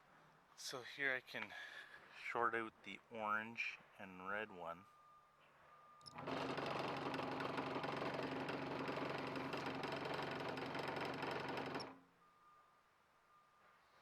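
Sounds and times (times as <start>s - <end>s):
fridge compressor buzzing: 6.1s - 12.0s.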